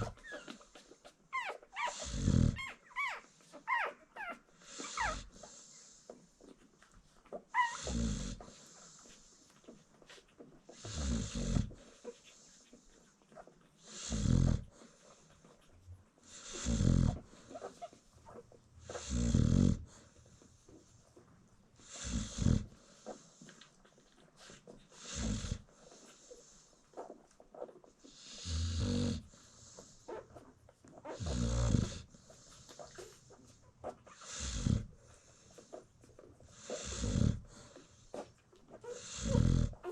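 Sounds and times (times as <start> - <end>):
dog snoring: 0.0 - 3.1, 4.2 - 6.3, 7.5 - 9.4, 10.7 - 12.6, 13.8 - 15.2, 16.2 - 17.9, 18.8 - 20.9, 21.8 - 23.6, 24.4 - 27.1, 28.0 - 30.4, 31.1 - 33.2, 34.1 - 39.9
dog breathing quietly: 0.0 - 39.9.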